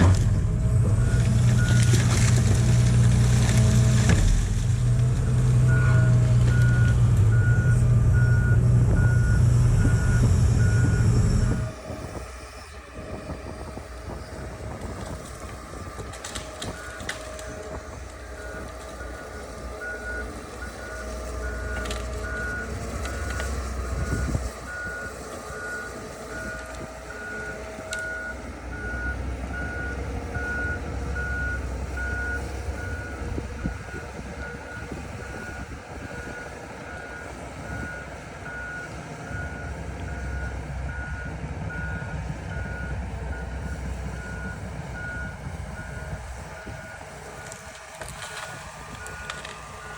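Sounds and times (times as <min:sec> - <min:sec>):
heavy machine engine running: 0:00.0 - 0:49.9
reversing alarm beeping: 0:05.6 - 0:14.5, 0:18.3 - 0:47.7, 0:48.3 - 0:49.9.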